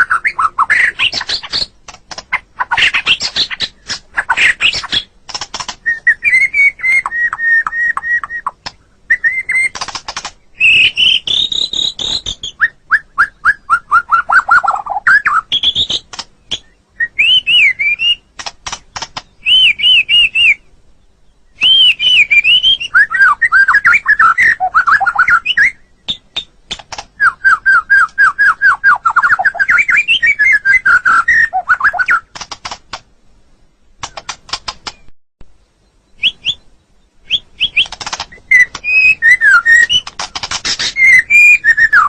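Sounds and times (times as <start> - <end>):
bird singing whistled notes: 0.0 - 1.7, 5.8 - 9.8, 10.5 - 18.3, 19.2 - 26.6, 27.2 - 32.3, 35.8 - 42.0
bird sharp clicking notes: 0.3 - 6.1, 7.0 - 8.8, 9.5 - 10.4, 18.4 - 19.7, 23.6 - 27.2, 31.1 - 33.1, 34.0 - 35.1, 37.3 - 42.0.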